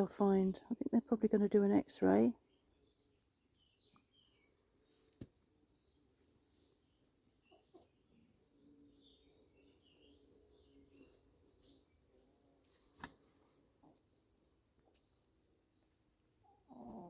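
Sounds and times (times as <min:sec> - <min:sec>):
faint bird chirps: 0:02.3 - 0:12.1, 0:16.3 - 0:17.0.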